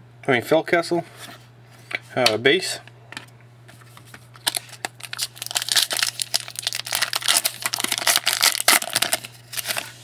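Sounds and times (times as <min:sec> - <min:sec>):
foil wrapper crinkling: 0:04.3 - 0:10.0.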